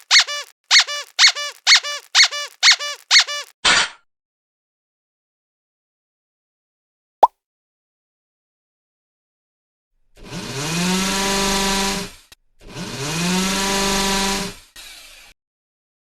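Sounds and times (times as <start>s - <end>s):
power tool motor buzz: 10.2s - 15.3s.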